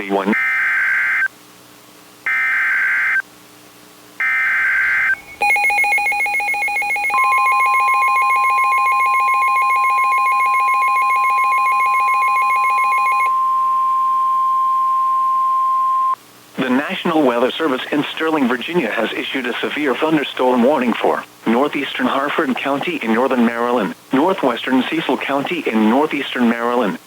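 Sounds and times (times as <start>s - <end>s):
two-tone attention signal: 5.0s - 16.2s.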